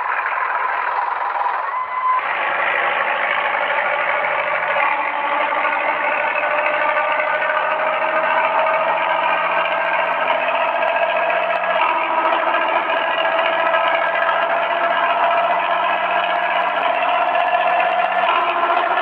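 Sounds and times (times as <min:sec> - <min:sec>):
bus diesel engine growling: 0:00.0 - 0:19.0.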